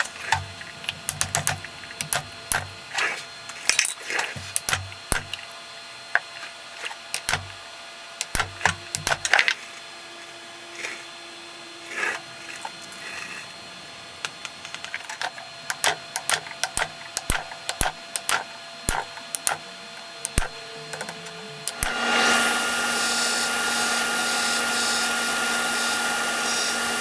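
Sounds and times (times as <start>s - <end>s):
sharp taps and knocks: 4.4s - 5.4s.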